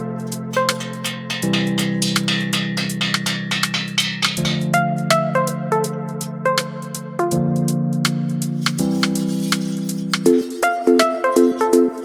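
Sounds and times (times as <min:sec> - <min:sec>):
instrumental music with percussive beat: 0:00.4 - 0:05.6, 0:08.5 - 0:12.0.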